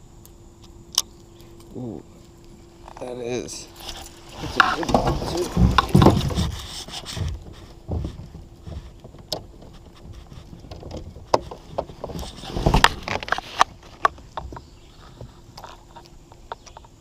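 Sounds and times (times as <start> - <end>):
gear knocking in plastic kayak: 4.1 - 16.9.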